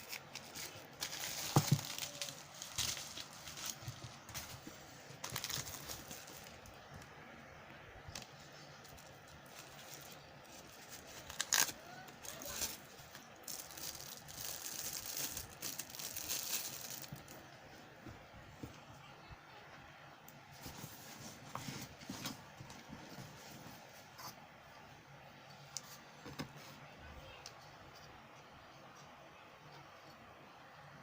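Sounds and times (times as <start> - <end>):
plastic packaging crinkling: 0.0 - 6.8, 8.1 - 17.4.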